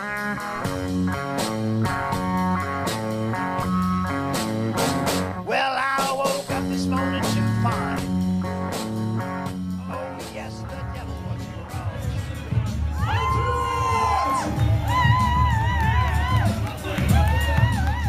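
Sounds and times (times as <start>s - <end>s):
bending lead guitar phrase: 0.0s - 11.0s
blues rock music: 0.0s - 18.0s.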